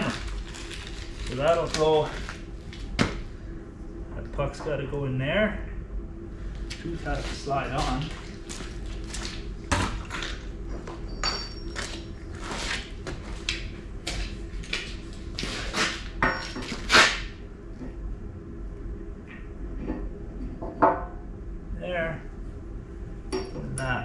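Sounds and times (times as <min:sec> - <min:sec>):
metallic pings: 0:11.0 - 0:11.8.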